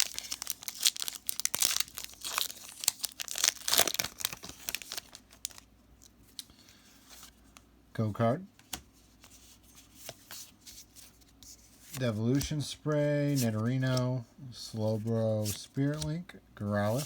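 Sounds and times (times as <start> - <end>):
foil wrapper crinkling and tearing: 0.0 - 6.4.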